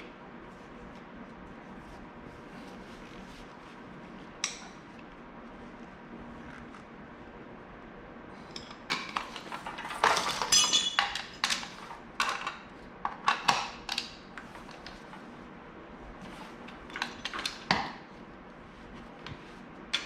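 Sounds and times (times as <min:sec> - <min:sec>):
small metal parts clinking: 0:09.6 - 0:11.6.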